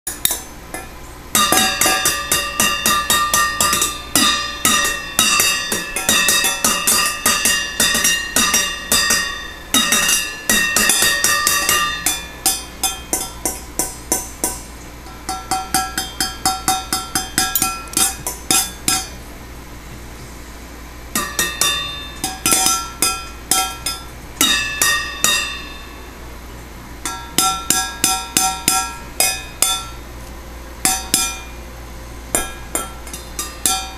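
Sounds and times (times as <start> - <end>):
baby banging on bowls and pot: 0.1 - 19.2, 21.1 - 26.0, 27.0 - 30.0, 30.8 - 31.6, 32.3 - 33.9.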